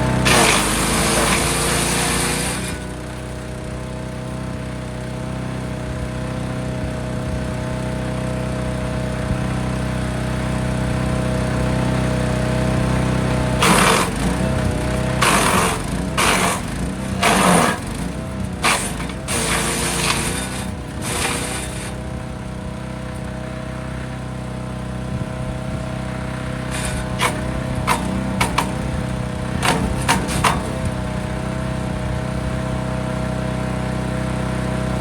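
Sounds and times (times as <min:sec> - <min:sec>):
wood chipper engine running: 0:00.0 - 0:35.0
branches being chipped: 0:00.1 - 0:03.0, 0:13.6 - 0:22.0, 0:26.5 - 0:29.0.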